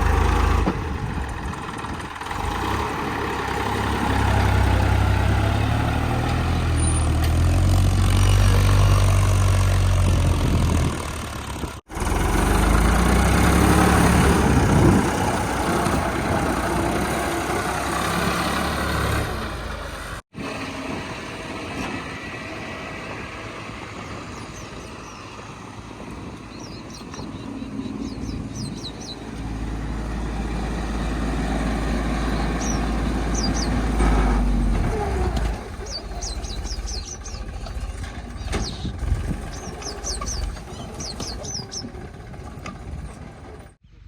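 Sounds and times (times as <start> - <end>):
heavy diesel engine running: 0.0 - 44.0.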